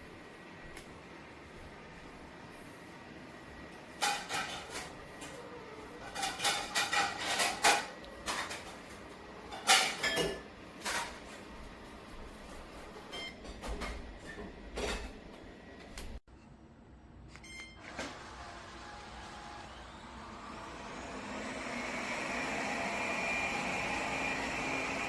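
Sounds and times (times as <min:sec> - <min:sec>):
robot vacuum hum and whine: 0:17.8 - 0:25.0.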